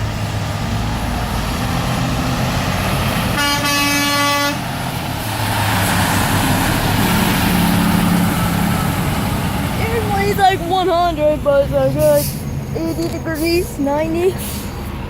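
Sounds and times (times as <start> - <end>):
heavy truck traffic rumble: 0.0 - 15.0
truck engine: 0.0 - 15.0
truck horn: 3.3 - 4.9.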